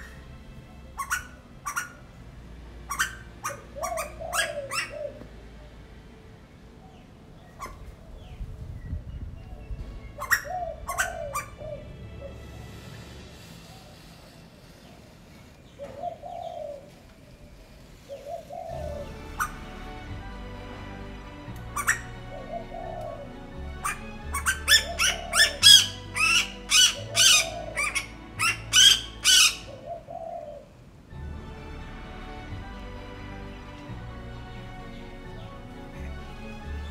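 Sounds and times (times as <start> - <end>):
koel calling: 1.0 - 2.1, 2.9 - 5.2, 10.2 - 11.9, 18.1 - 19.9, 21.6 - 30.4.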